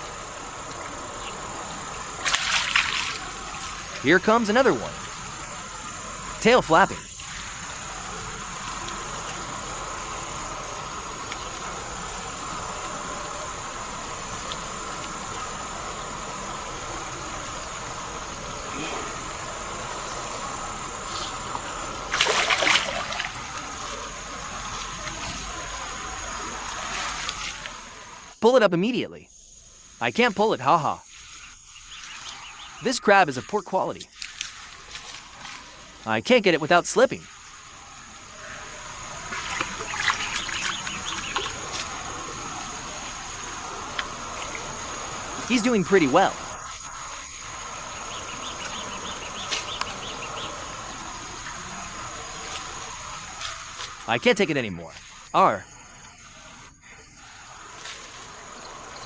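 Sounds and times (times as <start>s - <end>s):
birds chirping: 0.0s - 22.1s, 30.1s - 34.2s, 35.3s - 59.0s
water trickling and flowing: 0.0s - 28.4s, 30.2s - 59.0s
high-pitched insect drone: 0.0s - 59.0s
loud water splash: 2.1s - 4.0s, 21.9s - 28.2s, 39.1s - 45.5s.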